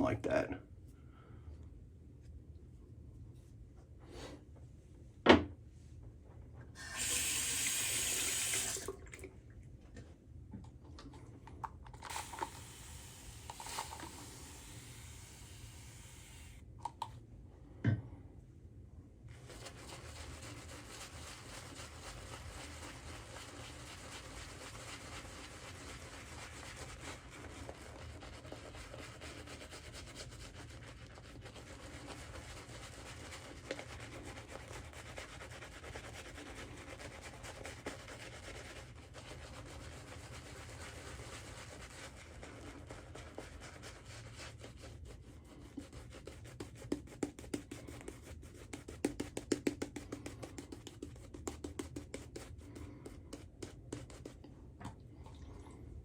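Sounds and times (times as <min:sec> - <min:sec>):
shaving brush scrubbing lather: 0:12.0 - 0:16.6, 0:19.3 - 0:54.4
tap running: 0:12.0 - 0:17.1.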